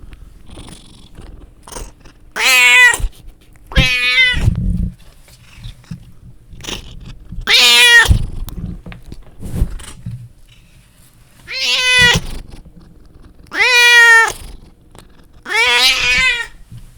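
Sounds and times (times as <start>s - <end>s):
cat meowing: 2.4s - 3.1s, 3.7s - 4.6s, 6.6s - 8.2s, 11.5s - 12.3s, 13.5s - 14.4s, 15.4s - 16.6s.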